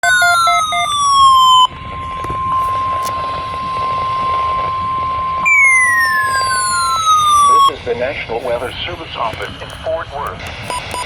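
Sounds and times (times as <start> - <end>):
falling siren-like tone: 0.0 - 7.7
steady alert beep: 0.0 - 7.7.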